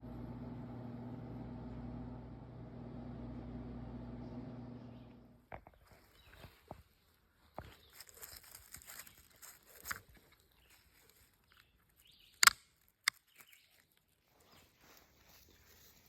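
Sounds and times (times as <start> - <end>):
rustling and handling noises: 5.5 - 16.0.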